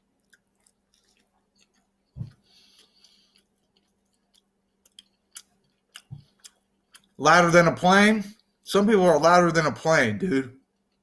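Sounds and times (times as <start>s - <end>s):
quiet chewing: 0.0s - 7.2s, 8.3s - 8.7s, 10.6s - 11.0s
mouth clicks: 4.9s - 7.2s.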